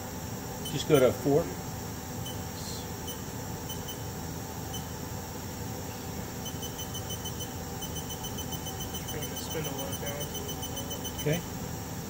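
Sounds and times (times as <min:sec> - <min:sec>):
machine hum: 0:00.0 - 0:12.0
high-pitched beeps: 0:03.0 - 0:04.0, 0:06.4 - 0:11.4.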